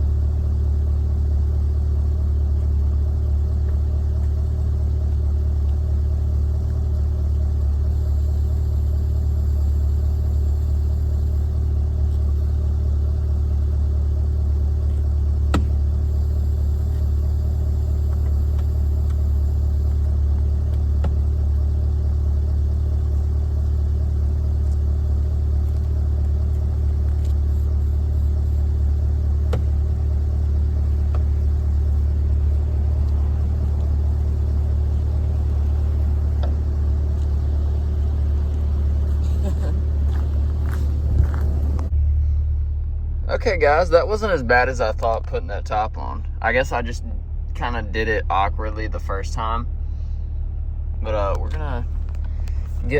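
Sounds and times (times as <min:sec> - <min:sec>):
car engine idling: 0:00.0 - 0:52.9.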